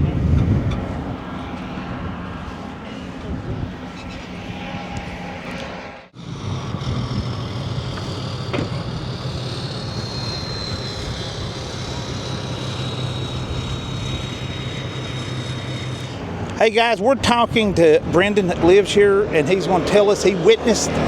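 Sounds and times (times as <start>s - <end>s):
motor humming: 0.0s - 21.0s
faint high whine: 0.7s - 17.1s.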